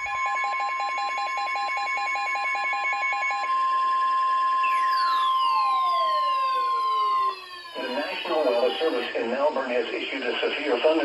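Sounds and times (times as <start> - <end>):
steady warning alarm tone: 0.0 - 11.0
downward sweeping siren tones: 3.9 - 9.1
rapid alert beeps: 4.6 - 9.2.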